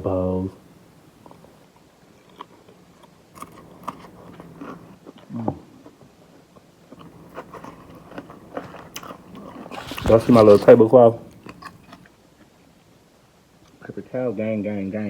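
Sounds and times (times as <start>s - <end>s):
person chewing crunchy food: 1.1s - 1.6s, 2.2s - 5.3s, 6.9s - 12.1s.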